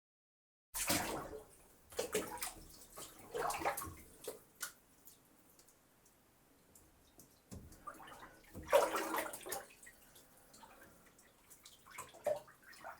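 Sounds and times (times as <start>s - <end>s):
water splashing and pouring: 0.8s - 4.5s, 7.6s - 12.9s.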